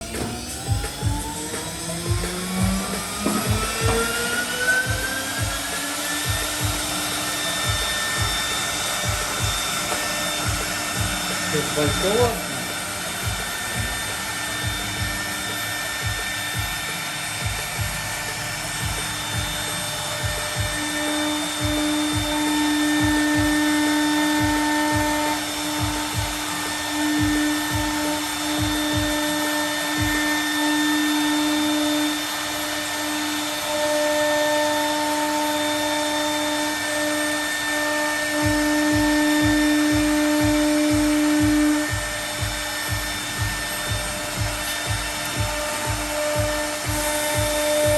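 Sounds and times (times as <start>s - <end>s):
router spindle whine: 0.0s - 47.9s.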